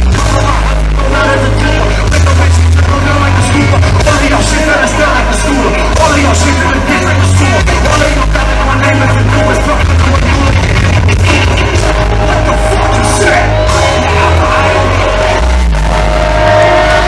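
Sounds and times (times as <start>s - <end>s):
loud live concert music: 0.0s - 17.0s
voices yelling: 11.6s - 17.0s.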